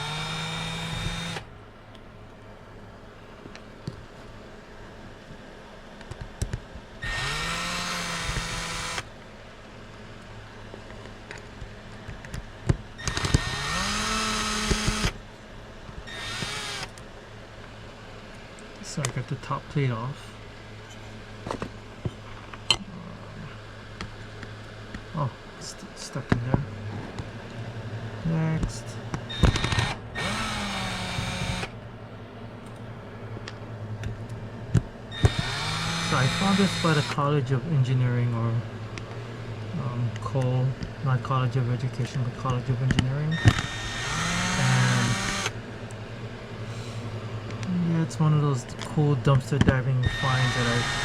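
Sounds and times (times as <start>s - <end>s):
power screwdriver motor whine: 0.0s - 1.5s, 7.0s - 9.1s, 13.0s - 15.2s, 16.1s - 17.0s, 29.3s - 31.8s, 35.1s - 37.2s, 43.3s - 45.6s, 50.0s - 51.0s
power screwdriver click: 13.0s - 15.2s, 29.3s - 31.7s, 35.2s - 37.2s, 43.3s - 45.5s
sharp click: 29.1s - 31.7s.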